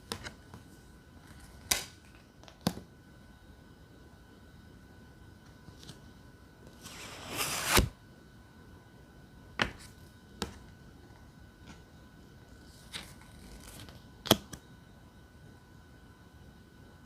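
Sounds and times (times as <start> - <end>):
cards snapping: 1.4 - 2.0.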